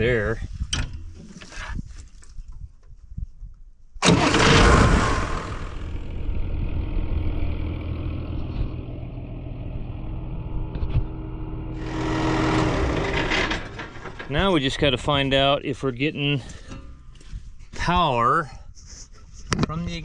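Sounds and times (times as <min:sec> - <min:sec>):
engine starting and running: 0:04.0 - 0:15.2.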